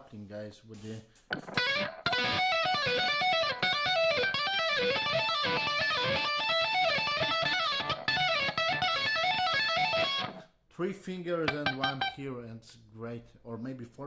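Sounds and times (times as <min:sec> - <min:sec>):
electric guitar tapping solo: 0:01.3 - 0:10.4, 0:11.5 - 0:12.1.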